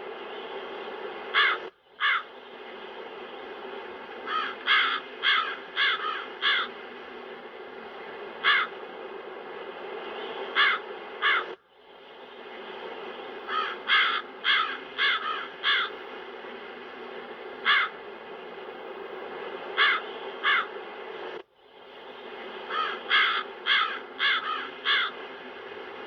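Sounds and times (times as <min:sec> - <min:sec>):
steady wind: 0:00.0 - 0:26.0
crows cawing: 0:01.3 - 0:02.3, 0:04.2 - 0:06.8, 0:08.4 - 0:08.8, 0:10.6 - 0:11.6, 0:13.5 - 0:16.0, 0:17.6 - 0:18.0, 0:19.8 - 0:20.7, 0:22.7 - 0:25.2.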